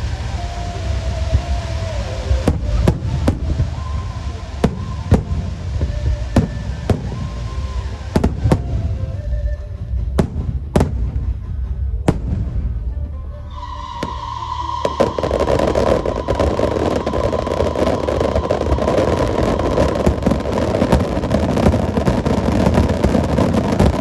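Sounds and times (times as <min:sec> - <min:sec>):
fireworks bursting with bangs: 0:00.0 - 0:24.0
low rumble: 0:00.0 - 0:24.0
steady high tone: 0:13.0 - 0:23.1.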